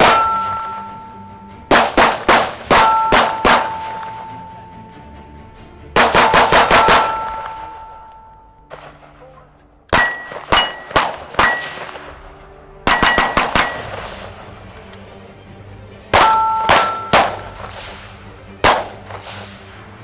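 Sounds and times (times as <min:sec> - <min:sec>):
steel target plates ringing: 0:00.0 - 0:05.2, 0:06.0 - 0:12.2, 0:12.9 - 0:14.5, 0:16.1 - 0:19.6
rapid gunshots: 0:01.7 - 0:04.2, 0:06.0 - 0:07.8, 0:09.9 - 0:12.2, 0:12.9 - 0:14.4, 0:16.2 - 0:19.7.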